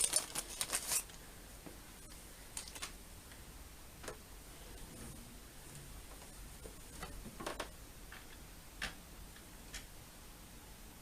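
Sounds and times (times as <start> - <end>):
crinkle: 0.0 - 1.3, 2.5 - 3.0.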